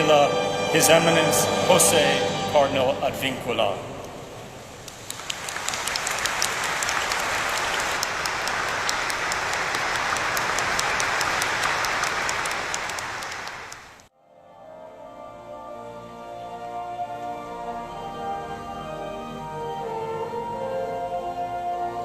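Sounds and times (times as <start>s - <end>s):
soft music: 0.0s - 3.9s, 14.1s - 22.0s
congregation applauding: 4.8s - 14.1s.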